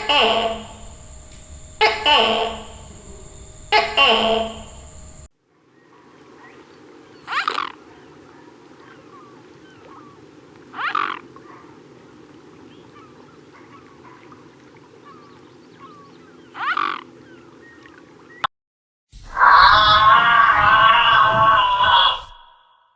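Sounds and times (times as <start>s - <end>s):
faint chirps: 0.0s - 10.3s
steady background hum: 0.0s - 18.4s
short loud animal call: 19.2s - 22.8s.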